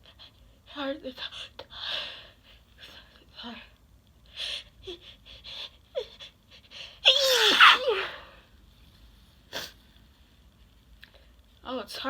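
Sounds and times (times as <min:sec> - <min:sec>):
person sneezing: 0:07.1 - 0:08.2.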